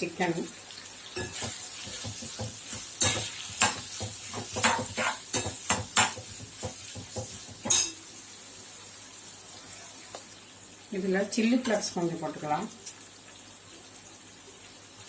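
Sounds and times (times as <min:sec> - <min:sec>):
food sizzling in a pan: 0:00.0 - 0:15.0
spatula clanking and scraping a pan: 0:01.1 - 0:08.1.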